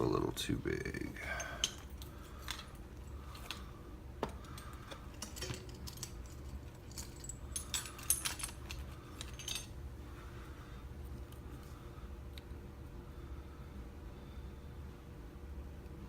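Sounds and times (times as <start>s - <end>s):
small metal tools clinking: 1.2s - 3.6s, 4.3s - 9.8s.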